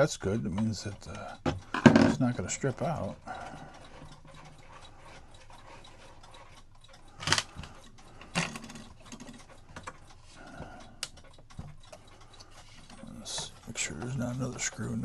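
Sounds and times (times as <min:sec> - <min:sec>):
clock ticking: 0:00.0 - 0:15.0
knocks of clock parts handled: 0:01.4 - 0:02.4.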